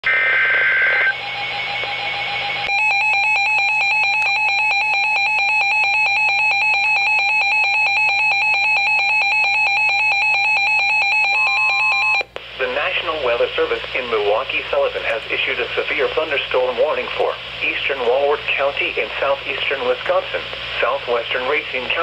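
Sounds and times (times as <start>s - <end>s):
buzzing data tones: 0.0s - 3.0s
alternating high and low alarm beeps: 0.9s - 12.2s.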